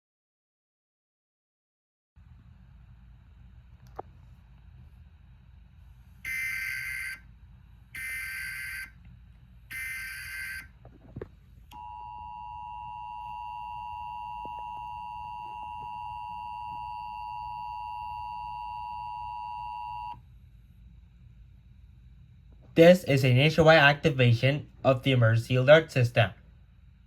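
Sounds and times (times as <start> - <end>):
two-tone attention signal: 11.8 - 20.2.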